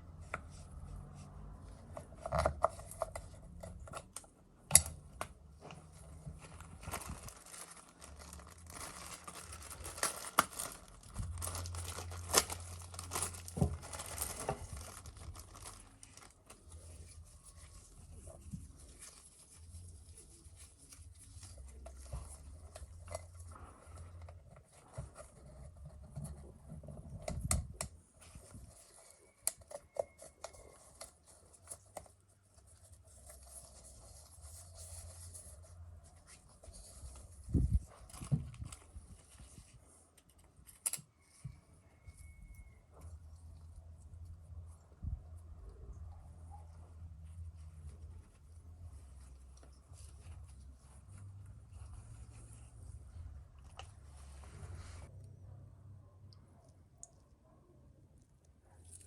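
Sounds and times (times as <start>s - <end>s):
wrapping crinkling and tearing: 5.8s - 25.5s.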